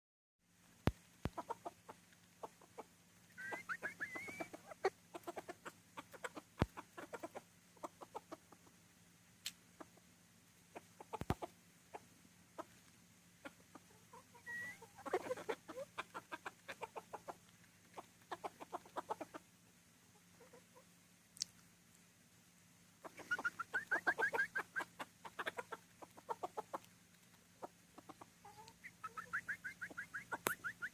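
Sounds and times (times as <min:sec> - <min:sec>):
faint steady hum: 0:00.4 - 0:30.9
rooster clucking: 0:01.2 - 0:08.8, 0:09.7 - 0:12.8, 0:13.4 - 0:19.5, 0:20.2 - 0:21.0, 0:23.0 - 0:30.9
high wavering squawk: 0:03.3 - 0:04.9, 0:14.3 - 0:15.8, 0:23.0 - 0:25.0, 0:28.5 - 0:30.9
sharp clicks: 0:30.1 - 0:30.9.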